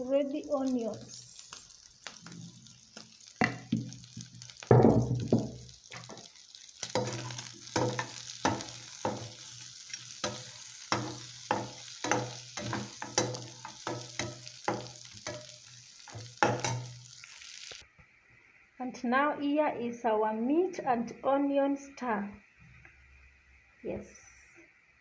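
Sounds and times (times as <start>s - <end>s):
beef and onions sizzling in a pan: 0.0s - 17.8s
spoon stirring and scraping: 5.9s - 17.0s.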